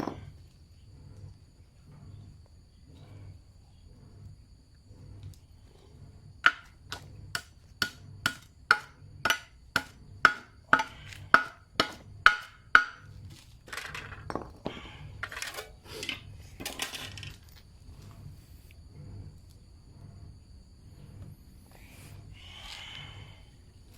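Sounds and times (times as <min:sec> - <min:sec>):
tool knocking on wood: 0:06.4 - 0:13.1.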